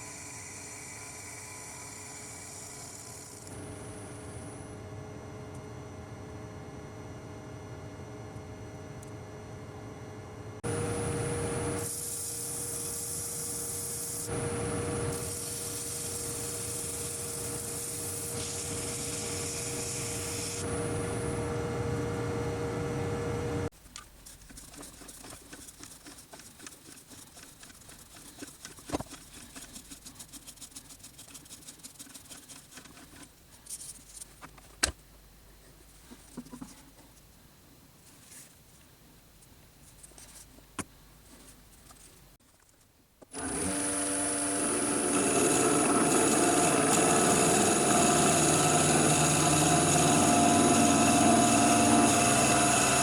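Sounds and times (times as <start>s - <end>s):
hiss: 11.8s - 14.3s, 15.1s - 20.6s
light scraping and rubbing: 24.0s - 34.8s, 35.8s - 37.2s, 38.0s - 38.7s, 39.8s - 40.6s.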